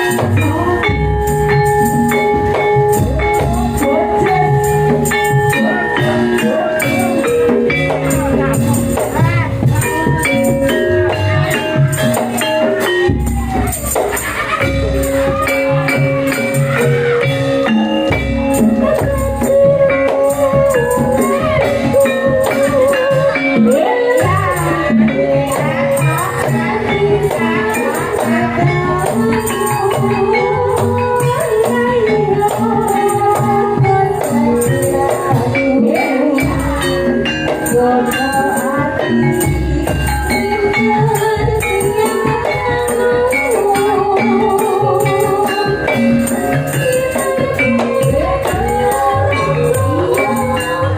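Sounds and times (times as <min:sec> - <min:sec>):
drum beat: 0:00.0 - 0:50.9
jingling tambourine-like percussion: 0:00.0 - 0:50.9
person singing: 0:00.0 - 0:50.9.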